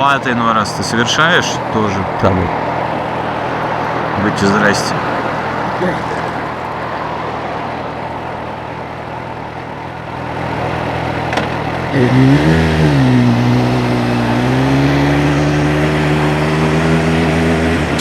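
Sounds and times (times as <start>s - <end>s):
motorcycle engine: 0.0s - 18.0s
road noise: 0.0s - 18.0s.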